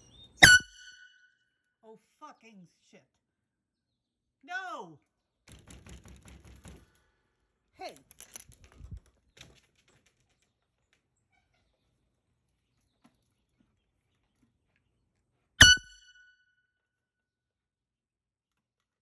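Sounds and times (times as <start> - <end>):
loud bang with ringing tone: 0.4 - 1.1, 15.6 - 16.2.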